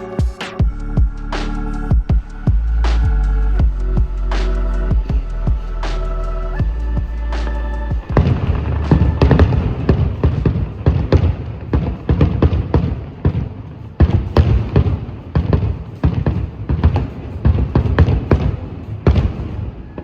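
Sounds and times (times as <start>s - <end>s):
firework bangs: 8.1s - 20.0s.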